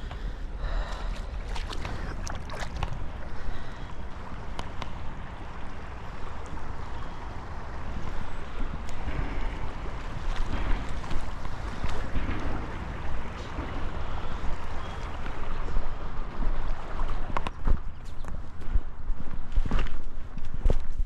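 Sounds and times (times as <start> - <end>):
flowing river water: 0.0 - 20.4
wind buffeting microphone: 0.0 - 21.0.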